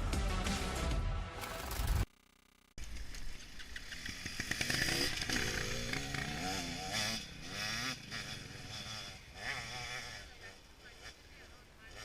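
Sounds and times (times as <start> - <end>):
dirt bike engine revving: 3.5 - 12.0.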